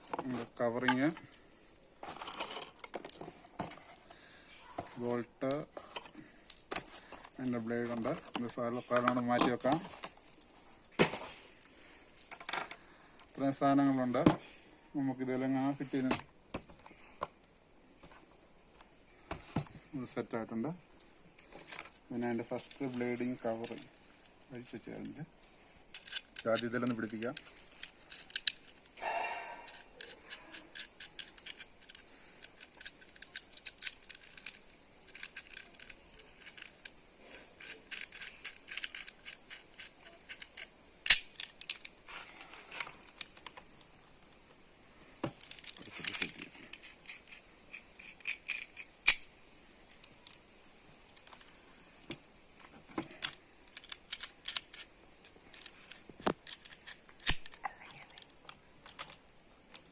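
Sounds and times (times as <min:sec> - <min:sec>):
metal parts clicking and rattling: 0:02.0 - 0:04.0, 0:05.4 - 0:14.0, 0:21.4 - 0:23.9, 0:24.5 - 0:29.0, 0:29.6 - 0:44.4, 0:45.2 - 0:51.6, 0:52.6 - 0:59.9.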